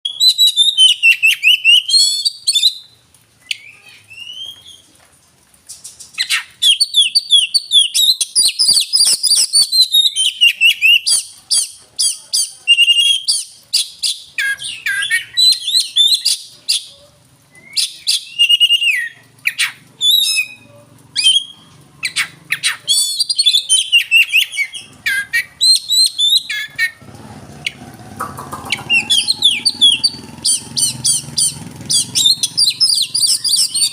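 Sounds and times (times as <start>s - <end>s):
songbird whistles and trills: 0.1s - 4.9s, 5.8s - 16.9s, 17.5s - 20.6s, 21.2s - 27.0s, 27.7s - 33.9s.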